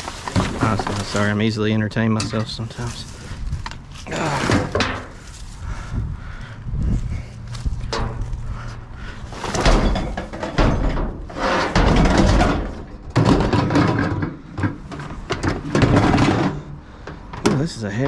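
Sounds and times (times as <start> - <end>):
junk clattering in a dumpster: 0.0 - 3.5, 4.2 - 5.3, 7.8 - 18.0
hard thuds and knocks: 9.4 - 17.7.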